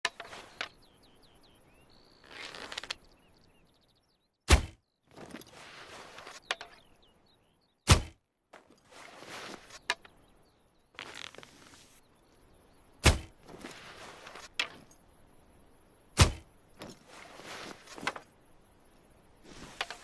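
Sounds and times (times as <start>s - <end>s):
birds chirping faintly: 0.0s - 20.0s
soft rustling: 0.1s - 0.8s, 5.1s - 6.8s, 8.6s - 10.1s, 10.9s - 12.0s, 13.4s - 15.0s, 16.7s - 18.4s, 19.4s - 20.0s
arrows hitting with thunks: 4.5s - 4.8s, 7.8s - 8.2s, 13.0s - 13.4s, 16.2s - 16.5s.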